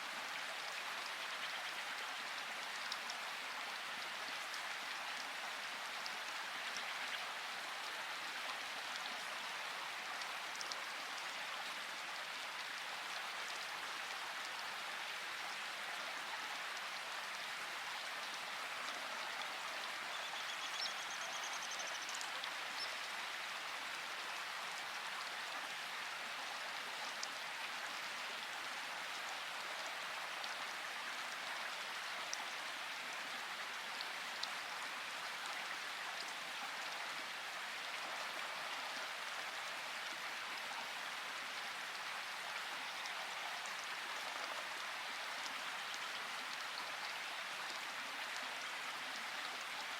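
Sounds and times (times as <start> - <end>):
rainfall: 0.0 - 49.9
faint high trill of ticks: 20.1 - 23.0.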